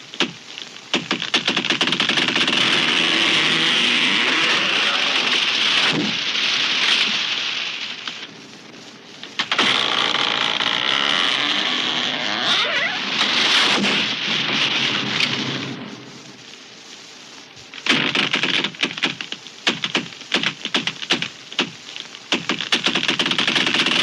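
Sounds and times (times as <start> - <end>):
sharp wood cracks and snaps: 0.0 - 6.2, 17.6 - 24.0
tree crashing down: 0.0 - 8.3, 9.3 - 16.0.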